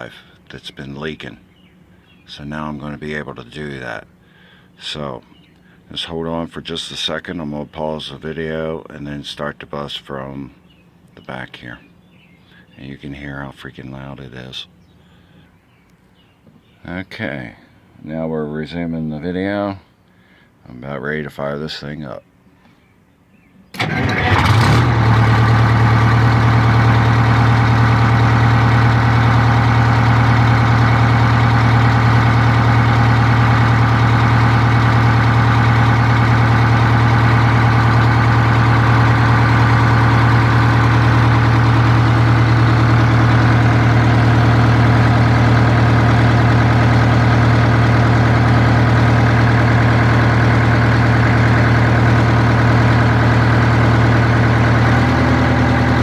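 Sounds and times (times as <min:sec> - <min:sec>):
loud diesel bus engine idling: 0:23.8 - 0:56.0.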